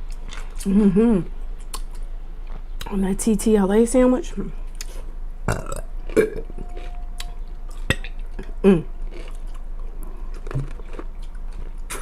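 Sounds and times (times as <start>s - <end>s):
wet chewing: 5.6s - 12.0s.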